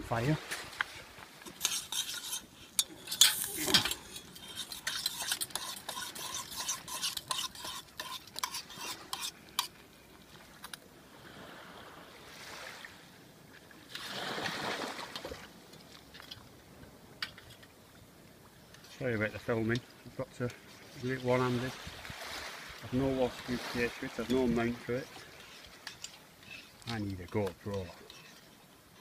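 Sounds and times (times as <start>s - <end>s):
spoon scraping metal pot: 1.4s - 9.7s, 24.1s - 29.0s.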